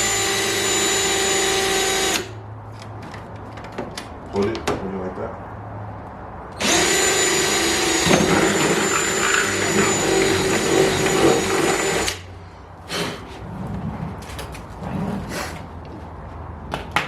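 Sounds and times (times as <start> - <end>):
power drill drilling: 0.0 - 2.3, 6.6 - 12.2.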